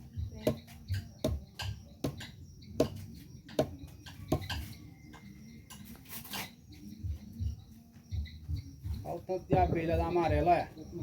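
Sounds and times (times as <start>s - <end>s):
dull low thuds: 7.0s - 11.0s.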